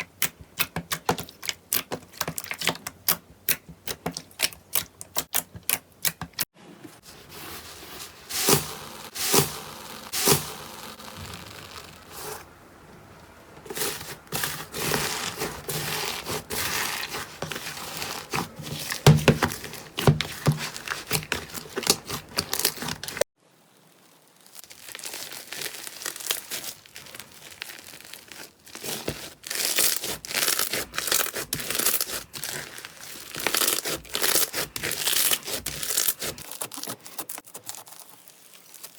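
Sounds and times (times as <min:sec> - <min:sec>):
slime crackling and popping: 0:09.1 - 0:12.4, 0:13.7 - 0:38.9.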